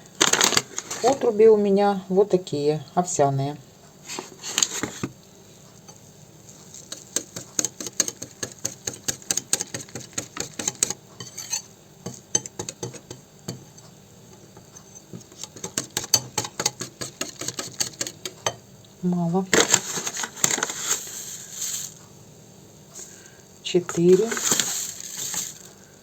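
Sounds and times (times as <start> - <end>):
whisk clinking against a dish: 6.7 - 13.8, 14.4 - 18.6.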